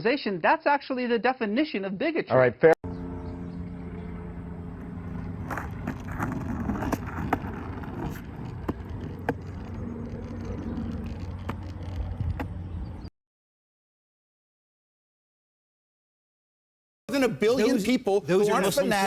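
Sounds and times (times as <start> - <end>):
low traffic rumble and hum: 2.8 - 13.1, 17.1 - 19.0.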